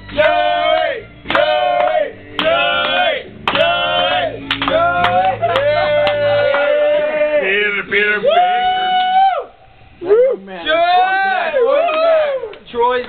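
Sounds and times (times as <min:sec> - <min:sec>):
people clapping: 0:00.0 - 0:07.2, 0:11.8 - 0:13.0
men chanting in unison: 0:00.2 - 0:08.4.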